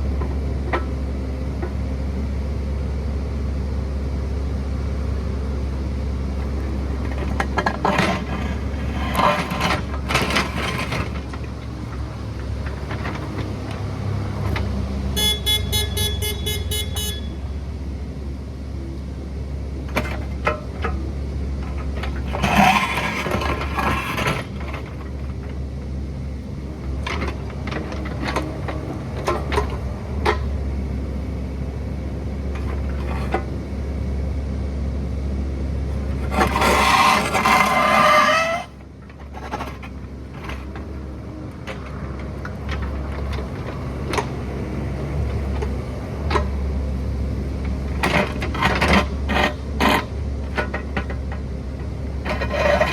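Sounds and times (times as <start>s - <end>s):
excavator diesel engine running: 0.0s - 52.9s
machine clanks and scrapes: 6.4s - 17.4s, 19.9s - 21.0s, 21.6s - 25.6s, 26.8s - 30.6s, 32.4s - 33.7s, 35.9s - 46.6s, 47.6s - 52.9s
rapid beeping alarm: 15.2s - 17.5s.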